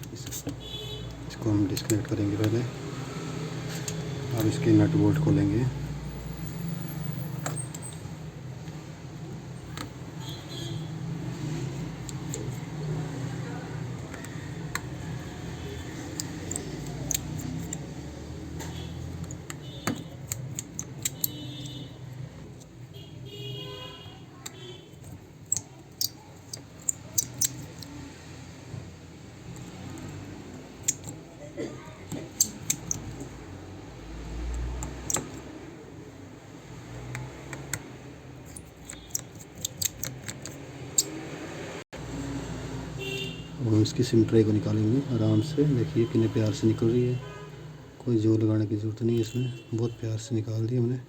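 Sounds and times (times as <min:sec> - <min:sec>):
screwdriver clicking on phone housing: 0:14.1 - 0:17.9, 0:18.5 - 0:21.8, 0:24.4 - 0:27.9, 0:32.3 - 0:33.1, 0:38.5 - 0:41.1.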